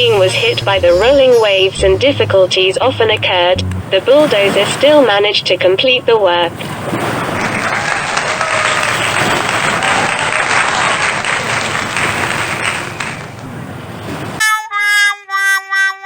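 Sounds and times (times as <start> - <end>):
electronic horn-like tune: 0.0 - 4.0
surf: 0.0 - 14.4
wind: 0.0 - 14.7.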